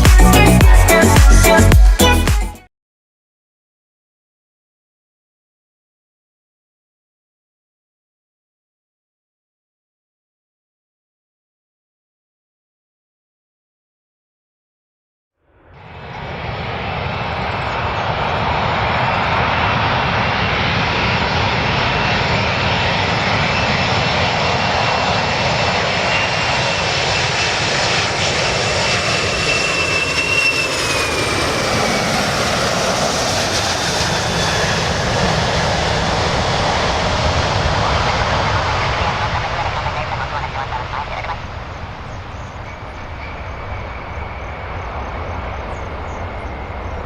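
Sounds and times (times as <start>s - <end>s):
airplane engine rushing: 0.0s - 2.3s, 15.6s - 47.0s.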